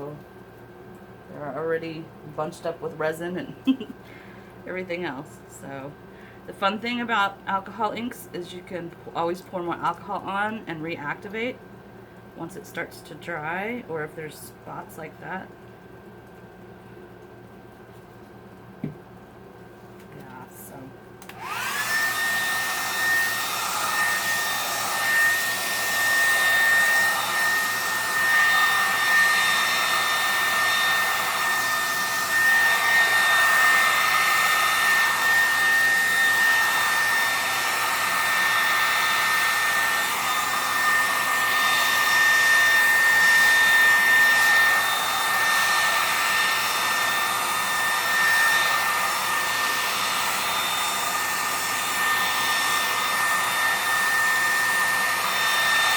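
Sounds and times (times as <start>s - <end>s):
hair dryer running: 0.9s - 6.1s, 18.8s - 19.1s, 20.2s - 55.9s.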